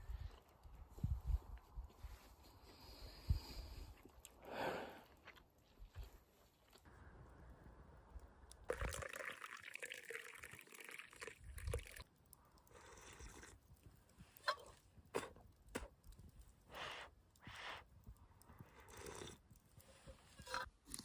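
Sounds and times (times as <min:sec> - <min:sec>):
liquid being poured: 0:08.5 - 0:12.1.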